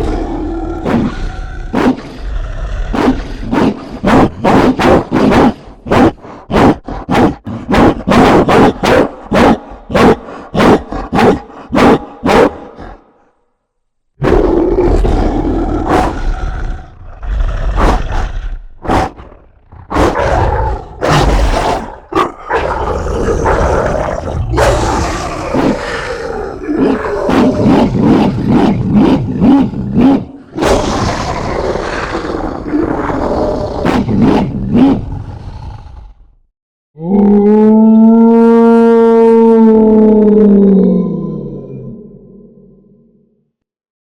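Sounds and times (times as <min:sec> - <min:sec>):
monster roars and growls: 0:00.0 - 0:04.8, 0:14.2 - 0:36.4, 0:37.0 - 0:43.2
monster dog barking: 0:00.0 - 0:13.1, 0:14.2 - 0:36.2.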